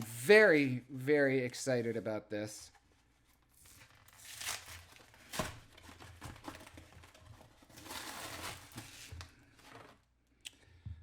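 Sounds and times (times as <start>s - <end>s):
packaging rustling: 3.3s - 10.1s
packaging ripping: 3.5s - 9.1s.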